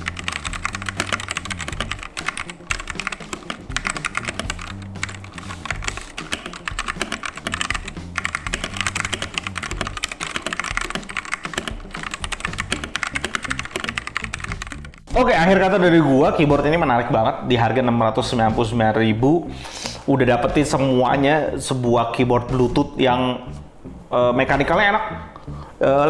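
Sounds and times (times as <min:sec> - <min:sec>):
mechanical keyboard typing: 0:00.0 - 0:15.1.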